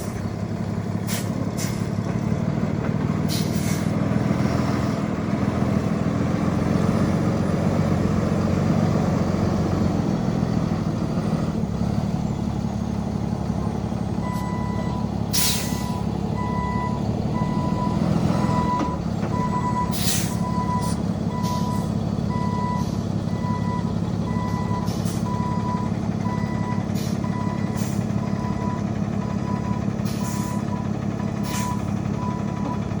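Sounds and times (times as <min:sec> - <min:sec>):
truck engine rumble: 0:00.0 - 0:33.0
air brake hisses: 0:01.0 - 0:01.9, 0:03.3 - 0:03.9, 0:15.3 - 0:16.0, 0:19.9 - 0:21.0, 0:30.0 - 0:30.7, 0:31.4 - 0:31.9
truck reverse alarm beeping: 0:12.4 - 0:33.0.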